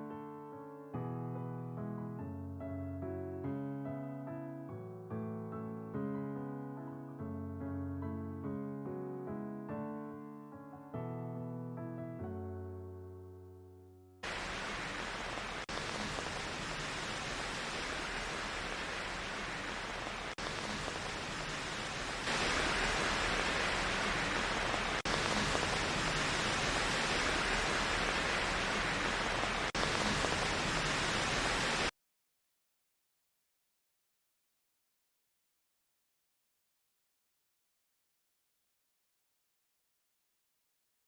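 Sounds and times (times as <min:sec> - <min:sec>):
steady rain falling: 0:14.2 - 0:31.9.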